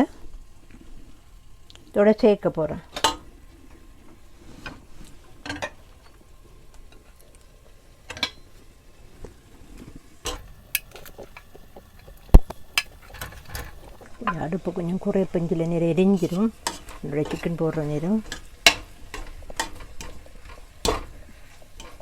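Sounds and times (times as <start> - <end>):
spoon scraping a cooking pot: 10.3 - 14.4, 16.0 - 17.6.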